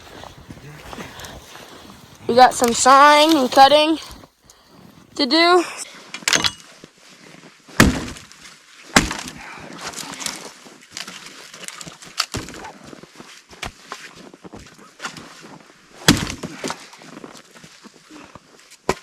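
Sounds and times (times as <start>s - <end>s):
wood cracking and snapping: 7.8s - 12.9s.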